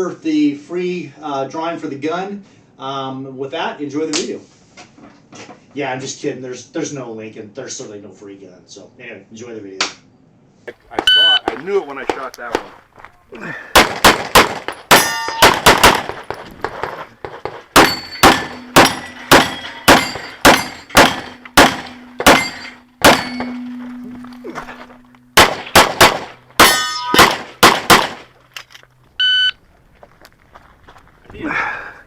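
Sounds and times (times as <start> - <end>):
beep-like tone: 11.1 - 11.4, 21.4 - 25.4
rapid pistol fire: 13.8 - 16.3, 17.8 - 22.4, 25.4 - 28.3
ring of steel targets: 13.8 - 16.4, 17.7 - 28.3.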